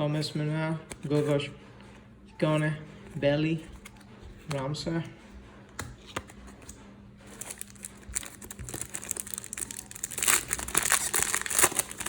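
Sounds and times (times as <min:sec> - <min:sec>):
plastic foil wrapper crinkling: 0:07.3 - 0:12.0.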